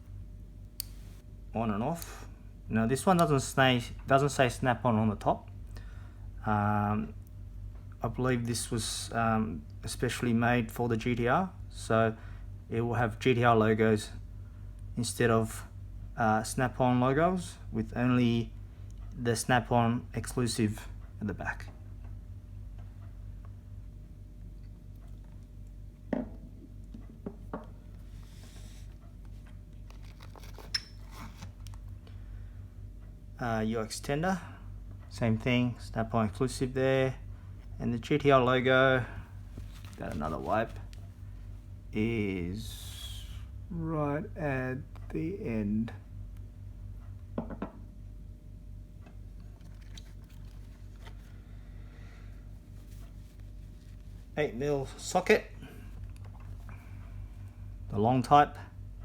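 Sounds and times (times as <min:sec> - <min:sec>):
low electrical hum: 0:00.0 - 0:59.0
soft rustling: 0:39.2 - 0:41.6, 0:49.4 - 0:51.5, 0:52.4 - 0:55.0
cloth rubbing: 0:39.4 - 0:40.9, 0:52.6 - 0:54.4.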